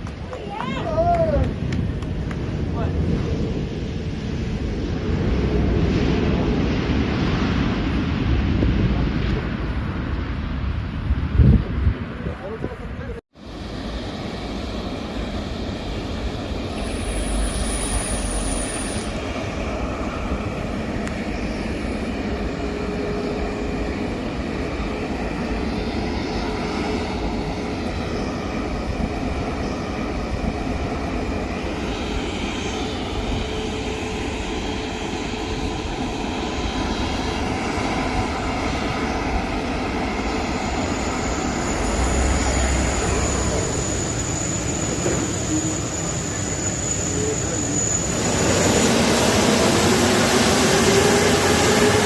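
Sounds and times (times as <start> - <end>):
jet engine rush: 0.0 - 52.0
faint high whine: 13.4 - 48.9.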